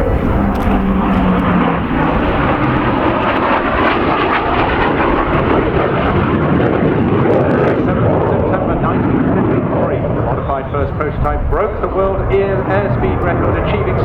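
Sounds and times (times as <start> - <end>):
low tone dropping in pitch: 0.0 - 7.2
jet engine roar: 0.0 - 14.0.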